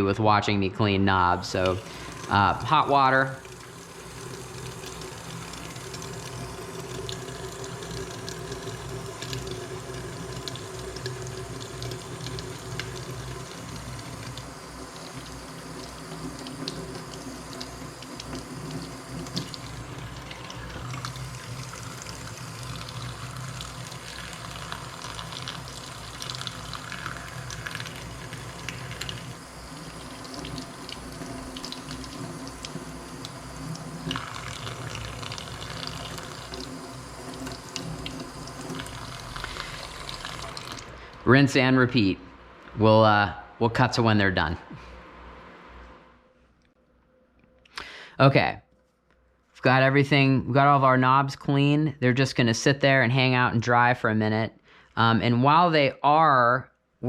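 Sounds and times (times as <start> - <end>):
tap water running into sink: 1.5 - 41.0.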